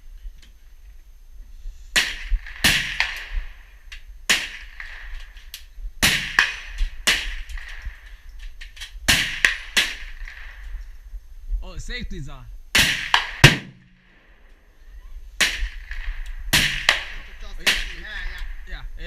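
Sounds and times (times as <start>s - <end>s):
loud sharp gunshots: 2.0s - 3.6s, 4.3s - 5.2s, 6.0s - 8.1s, 9.1s - 10.7s, 12.7s - 14.4s, 15.4s - 18.7s
fainter gunshots: 12.8s - 14.1s, 15.4s - 18.6s.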